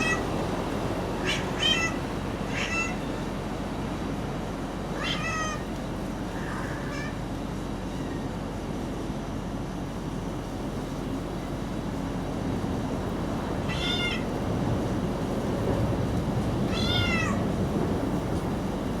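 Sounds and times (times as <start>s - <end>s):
cat meowing: 0.0s - 0.3s, 1.2s - 3.2s, 4.9s - 7.2s, 13.6s - 14.4s, 16.6s - 17.6s.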